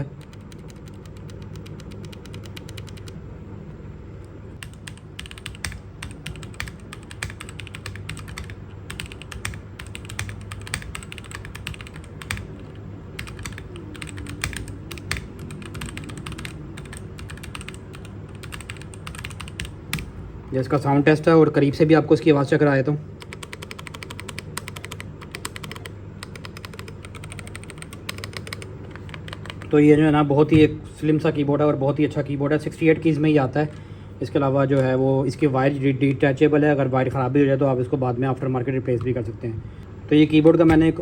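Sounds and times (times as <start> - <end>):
mechanical keyboard typing: 0.2 - 3.2, 4.6 - 12.6, 13.2 - 20.1, 23.2 - 29.8.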